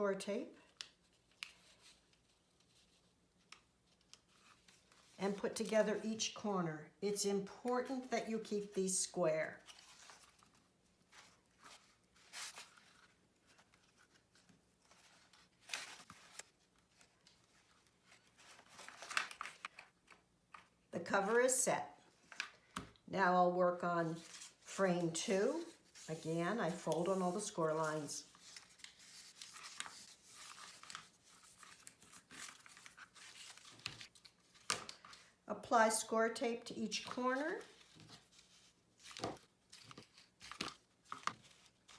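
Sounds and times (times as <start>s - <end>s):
cardstock rustling: 9.5s - 20.8s, 24.1s - 35.3s.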